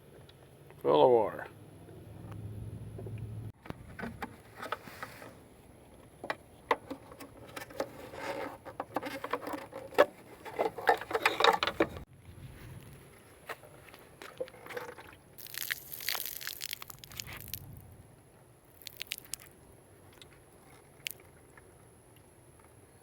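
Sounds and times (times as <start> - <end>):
plastic clicks and rattles: 8.7 - 12.0.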